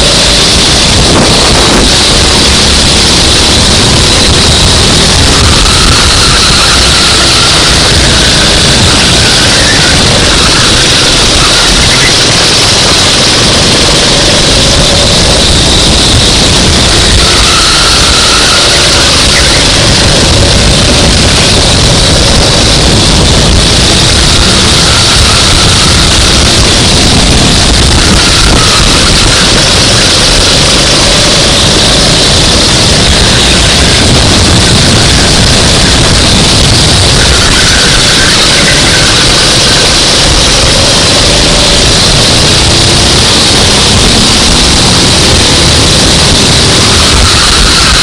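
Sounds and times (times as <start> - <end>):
dense noise: 0.0 - 48.0
go-kart engine at speed: 0.0 - 48.0.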